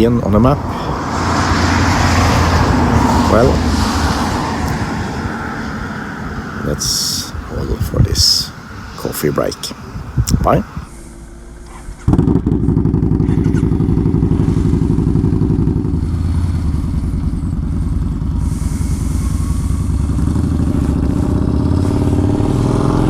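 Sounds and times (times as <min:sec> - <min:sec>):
motorcycle engine running: 0:10.9 - 0:23.0.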